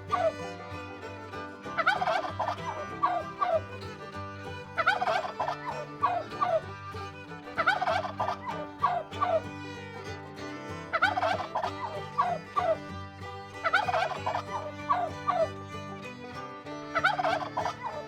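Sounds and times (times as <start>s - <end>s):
turkey gobbling: 0.1s - 0.4s, 1.8s - 3.6s, 4.8s - 6.6s, 7.6s - 9.4s, 10.9s - 12.8s, 13.6s - 15.5s, 17.0s - 18.0s.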